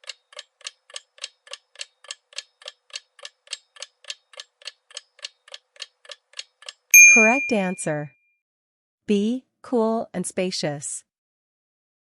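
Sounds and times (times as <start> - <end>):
countdown timer ticking: 7.0 - 7.9.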